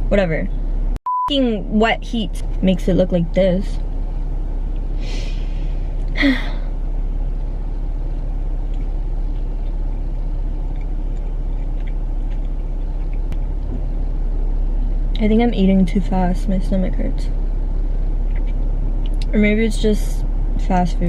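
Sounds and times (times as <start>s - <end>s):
car engine idling: 1.7s - 21.0s
short breathy hisses: 5.0s - 5.7s.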